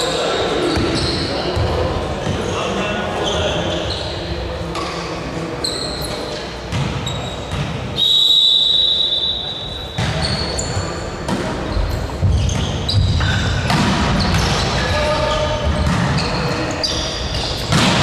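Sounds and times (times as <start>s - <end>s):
shoe squeaks: 0.3s - 1.5s, 2.4s - 5.0s, 5.6s - 17.7s
referee's whistle: 8.0s - 10.8s.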